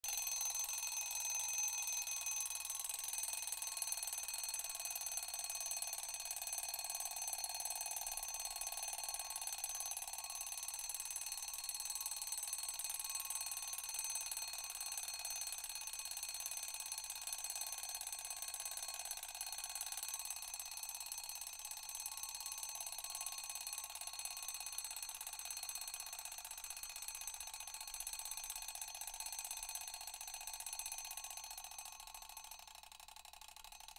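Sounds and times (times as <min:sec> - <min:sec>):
alarm ringing: 0:00.1 - 0:04.5.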